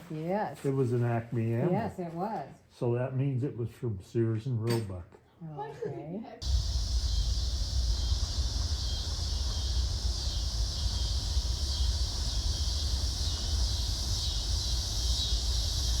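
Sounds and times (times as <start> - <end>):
high-pitched hiss: 6.4 - 16.0
wind rumble on microphone: 6.4 - 16.0.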